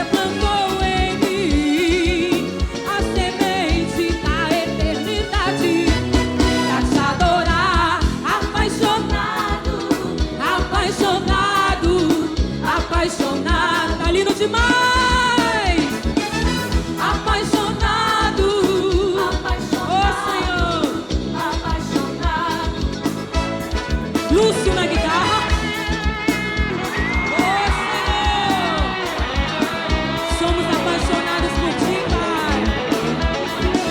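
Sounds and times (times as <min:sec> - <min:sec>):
melodic lead lines: 0:00.0 - 0:12.6, 0:22.2 - 0:33.9
drum and percussion beat: 0:00.0 - 0:33.9
live band music: 0:00.0 - 0:33.9.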